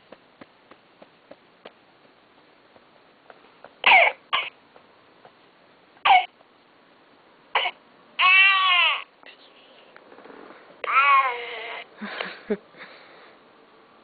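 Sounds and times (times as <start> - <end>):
electronic doll coughing: 3.8 - 4.5, 6.1 - 6.3, 7.6 - 7.8
electronic doll crying: 8.2 - 9.1, 10.8 - 11.9.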